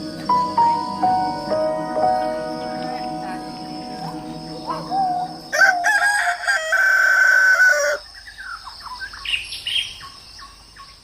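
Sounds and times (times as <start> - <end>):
high insect drone: 0.0 - 11.0
rooster crowing: 4.6 - 8.0
small birds chirping: 7.8 - 11.0.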